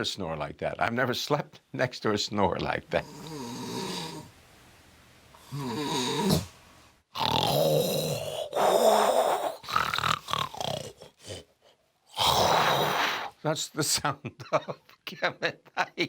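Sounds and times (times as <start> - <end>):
woman snoring heavily: 3.0 - 4.3, 5.4 - 11.4, 12.1 - 13.3.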